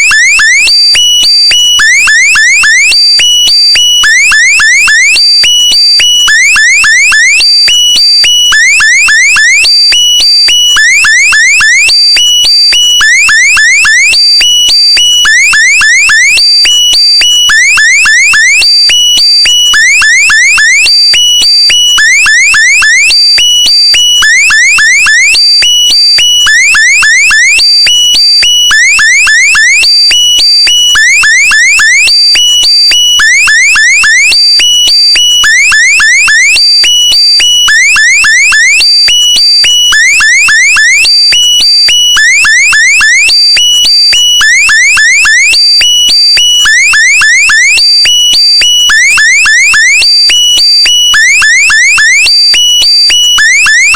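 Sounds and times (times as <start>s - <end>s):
rising electronic alarm chirps: 26.5s - 27.6s, 28.7s - 29.9s, 44.5s - 45.5s, 46.7s - 47.8s, 51.1s - 52.3s, 53.4s - 53.9s.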